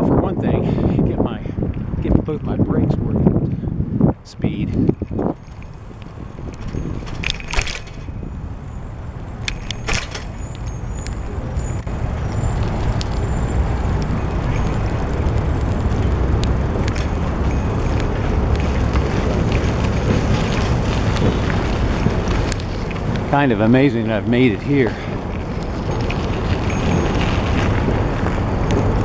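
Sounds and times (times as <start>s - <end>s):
bicycle road rumble: 0.0s - 29.0s
wind rushing over microphone: 0.0s - 29.0s
sharp clicks or rattles: 5.1s - 11.9s.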